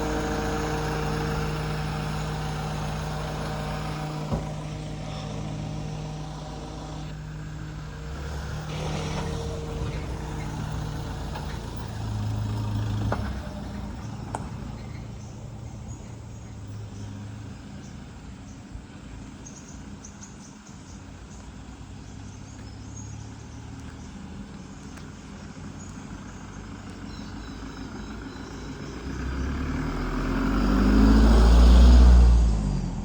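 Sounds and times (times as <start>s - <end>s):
vehicle engine humming: 0.0s - 33.0s.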